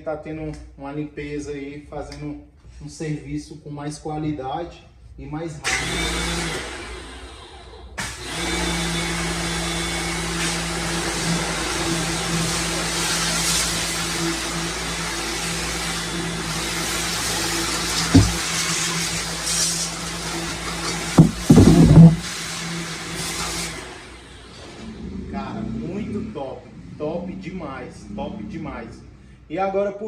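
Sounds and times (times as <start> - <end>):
pressure washer running: 8.0 - 23.6
water jet hiss: 16.4 - 23.6
sharp knocks: 18.1 - 18.4, 21.2 - 22.3.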